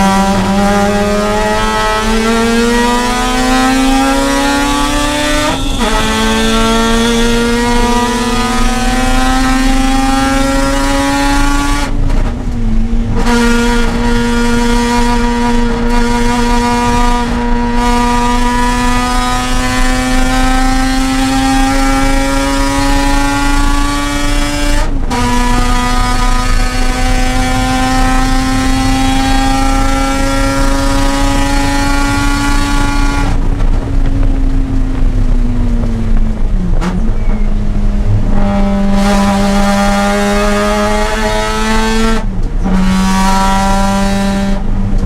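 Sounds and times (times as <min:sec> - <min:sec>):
rotary engine revving: 0:00.0 - 0:45.0.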